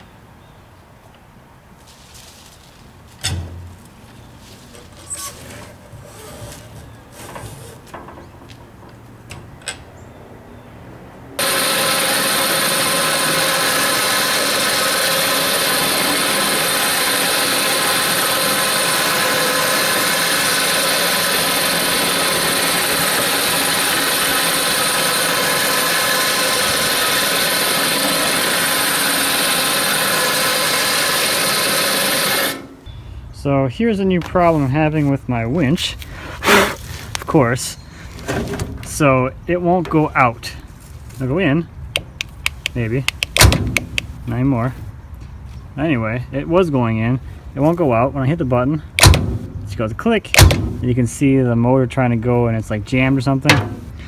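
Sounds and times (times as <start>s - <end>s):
electric winch motor whining: 11.4s - 32.9s.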